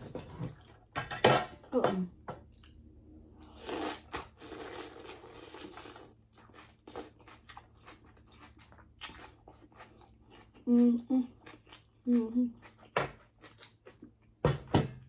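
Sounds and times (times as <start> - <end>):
person chewing and crunching: 3.4 - 14.4.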